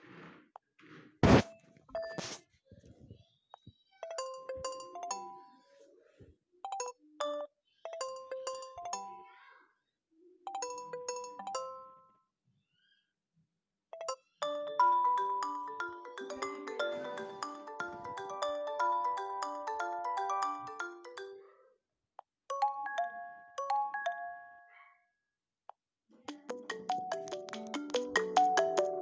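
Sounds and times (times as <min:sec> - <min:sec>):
bell-like phone ringtone: 0:14.0 - 0:21.5
dense ringtone run of notes: 0:14.5 - 0:21.4.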